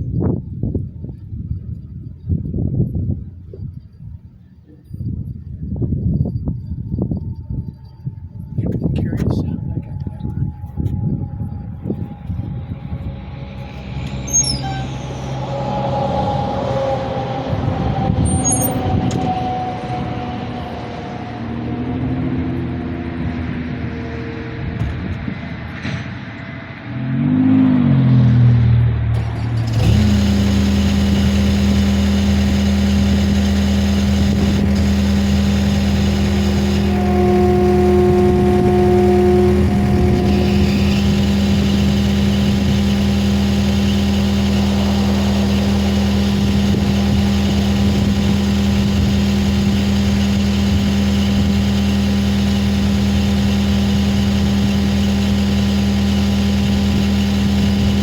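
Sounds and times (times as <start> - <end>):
skid steer engine running: 7.1 - 26.1, 29.1 - 58.0.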